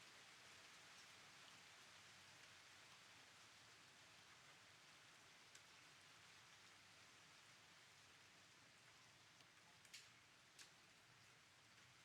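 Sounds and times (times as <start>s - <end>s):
faint steady rain: 0.0s - 12.0s
light raindrop ticks: 5.4s - 5.8s, 8.8s - 12.0s.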